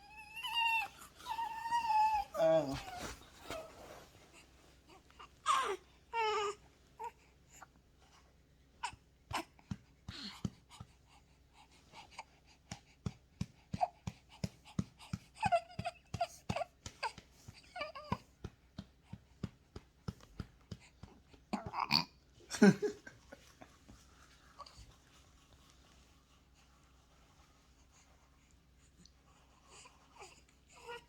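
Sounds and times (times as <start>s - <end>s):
baby whimpering cries: 0.0s - 3.8s, 5.4s - 7.2s, 15.4s - 18.2s.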